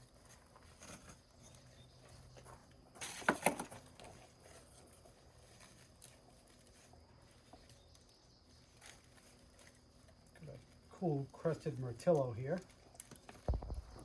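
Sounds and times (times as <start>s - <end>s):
packing material rustling: 3.0s - 14.0s.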